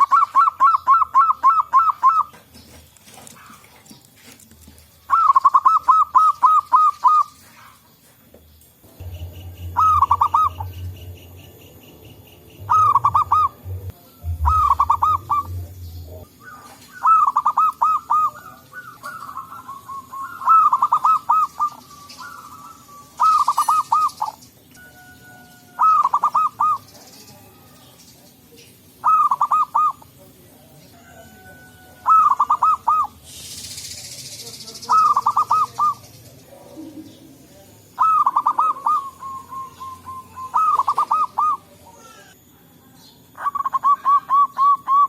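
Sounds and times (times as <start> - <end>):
doves cooing: 0.0 - 30.3, 30.9 - 34.1, 34.7 - 42.5
low rumble: 8.9 - 16.4.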